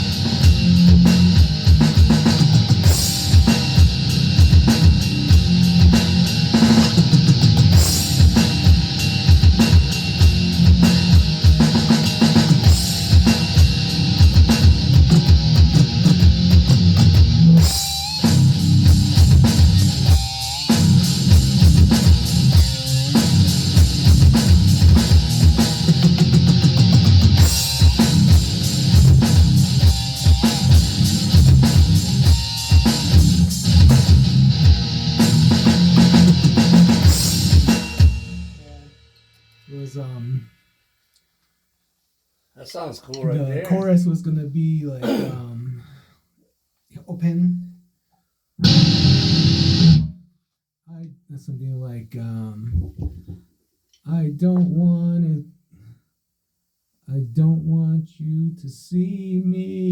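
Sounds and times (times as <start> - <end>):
heavy rock guitar: 0.0 - 38.8, 48.6 - 50.2
drum kit beat: 0.0 - 40.8, 48.6 - 50.1, 52.7 - 53.4.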